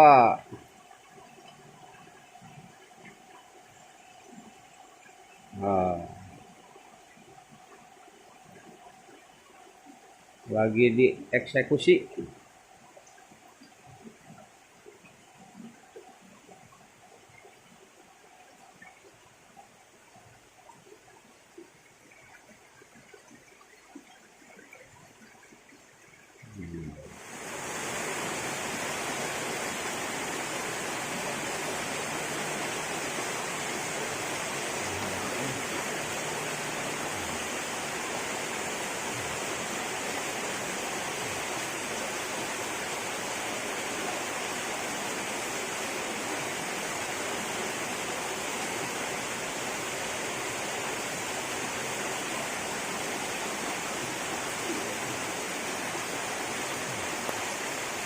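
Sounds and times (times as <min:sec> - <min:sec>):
flowing water rushing: 0:00.0 - 0:58.0.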